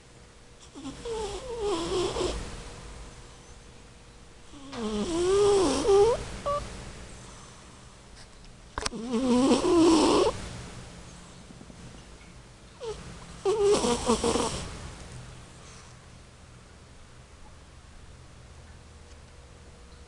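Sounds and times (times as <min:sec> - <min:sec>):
cat snoring with whistling pitch: 0:00.7 - 0:02.4, 0:04.5 - 0:06.7, 0:08.9 - 0:10.4, 0:12.8 - 0:14.7.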